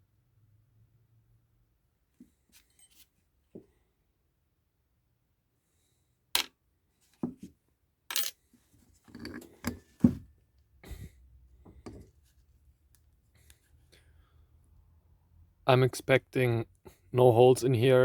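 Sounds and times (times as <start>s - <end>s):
metal parts clinking on workbench: 8.1s - 8.4s, 9.1s - 9.8s.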